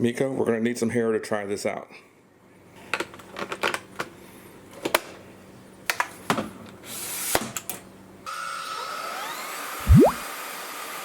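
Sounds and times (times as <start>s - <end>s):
short rush of noise: 9.8s - 10.2s.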